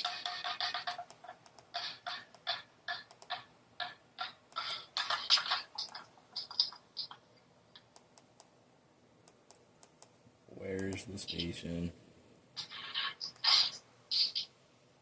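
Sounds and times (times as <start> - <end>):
faint clicks: 0.9 - 1.7, 2.3 - 3.4.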